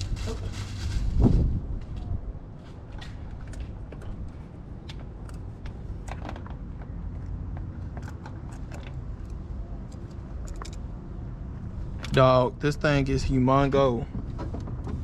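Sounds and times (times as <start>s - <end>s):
steady low rumble: 0.0s - 14.8s
light clicks of parts handled: 2.9s - 10.9s.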